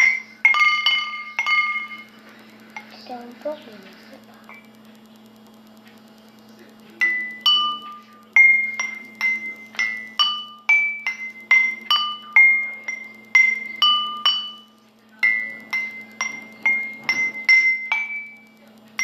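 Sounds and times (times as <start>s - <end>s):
water glasses struck ringing: 0.0s - 2.1s, 7.0s - 18.5s.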